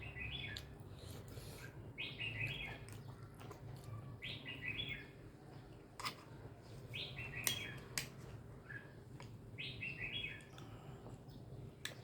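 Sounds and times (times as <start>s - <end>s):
small bird chirping: 2.0s - 3.2s, 6.9s - 8.0s.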